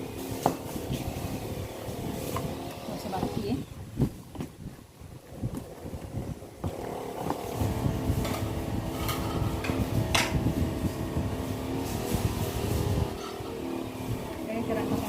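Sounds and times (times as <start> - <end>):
engine running: 5.6 - 15.0.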